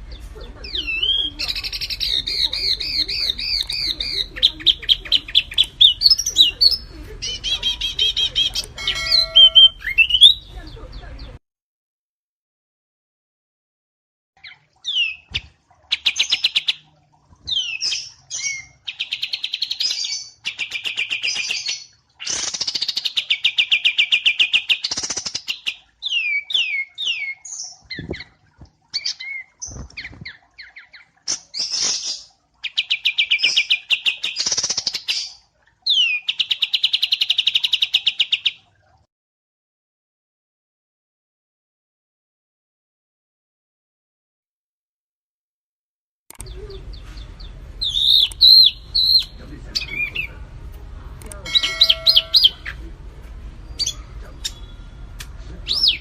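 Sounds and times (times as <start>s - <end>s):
songbird rattling trills: 0.1s - 10.8s, 46.5s - 50.3s, 51.3s - 52.9s.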